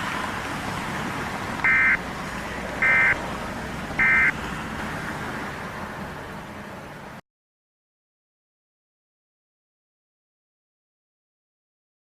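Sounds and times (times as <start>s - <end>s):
data screech bursts: 1.7s - 2.0s, 2.8s - 3.2s, 4.0s - 4.3s.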